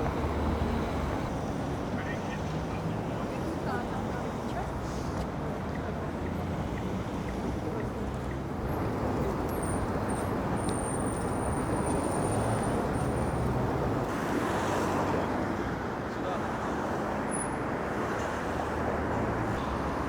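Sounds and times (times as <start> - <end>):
road traffic passing: 0.0 - 1.8, 6.8 - 20.0.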